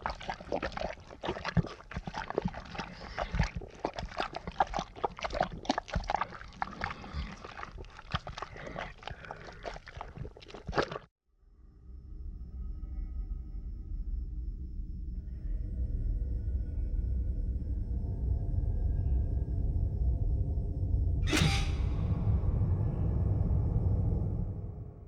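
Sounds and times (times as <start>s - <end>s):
low droning tone: 11.5s - 25.0s
low rumble: 11.7s - 25.0s.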